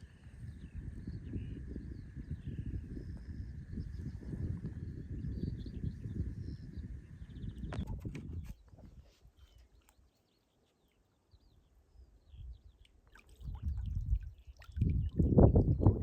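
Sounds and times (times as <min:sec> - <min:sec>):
wind buffeting microphone: 0:00.0 - 0:09.1, 0:13.4 - 0:16.0.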